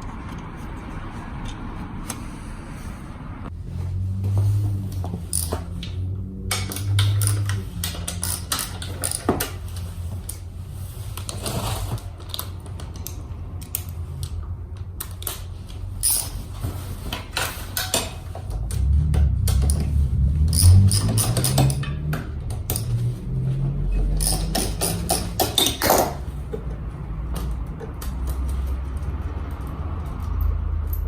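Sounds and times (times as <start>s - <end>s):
metallic clinks of hand tools: 20.5s - 21.9s.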